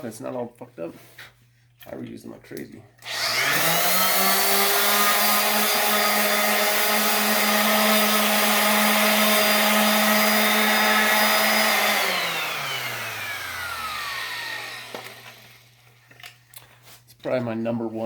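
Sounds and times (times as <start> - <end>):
orbital sander whining: 3.0 - 15.8.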